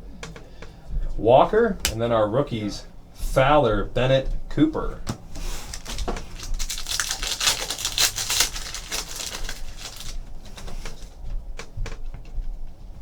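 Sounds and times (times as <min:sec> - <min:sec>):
card pack wrapper crinkling: 0:05.3 - 0:11.1.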